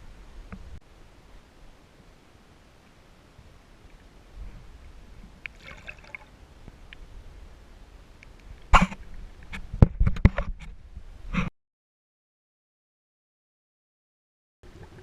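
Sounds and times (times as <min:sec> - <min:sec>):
water noise: 0:00.0 - 0:11.5, 0:14.6 - 0:15.0.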